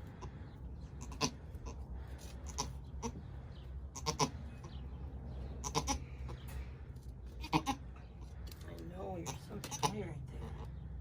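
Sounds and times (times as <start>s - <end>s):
goat bleating: 0.9s - 3.2s, 3.9s - 4.7s, 5.6s - 6.3s, 7.3s - 8.0s, 9.2s - 10.7s.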